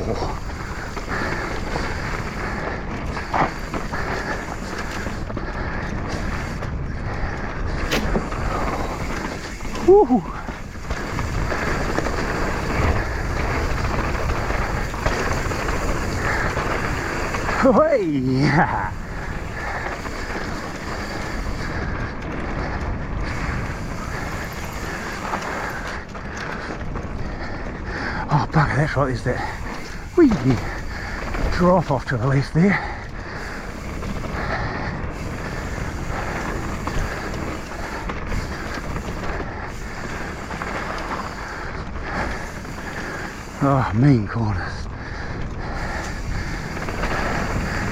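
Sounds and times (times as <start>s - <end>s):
bike knocks and rattles: 0.0s - 28.0s
tyres rolling over dirt trail: 0.0s - 47.9s.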